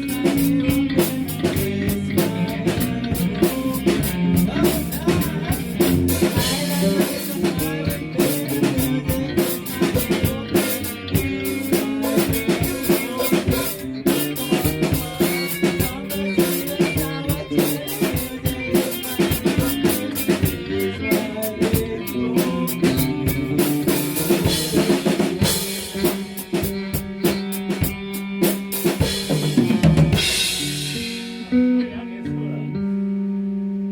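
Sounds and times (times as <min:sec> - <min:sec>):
drum kit: 0:00.0 - 0:32.6
bass: 0:00.0 - 0:33.9
guitar: 0:00.0 - 0:33.9.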